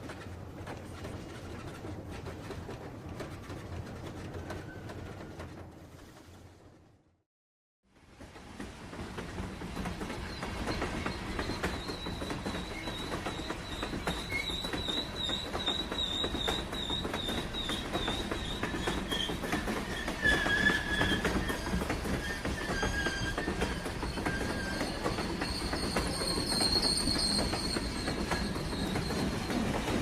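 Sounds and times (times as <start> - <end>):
train rolling along track: 0.0 - 7.1, 7.9 - 30.0
wheels clicking over rail joints: 8.2 - 30.0
lower wheel squeal: 10.0 - 30.0
high wavering wheel squeal: 10.7 - 30.0.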